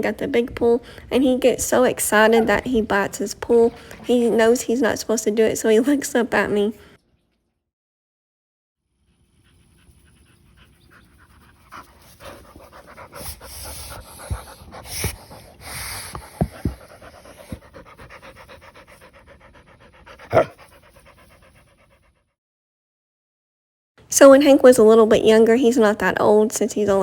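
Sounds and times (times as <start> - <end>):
dog panting: 9.1 - 22.3.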